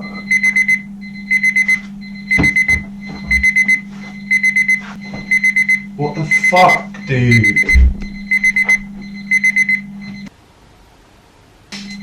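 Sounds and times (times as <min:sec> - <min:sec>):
alarm clock beeping: 0:00.0 - 0:10.3
steady low hum: 0:00.0 - 0:12.0
knock: 0:02.4 - 0:03.4.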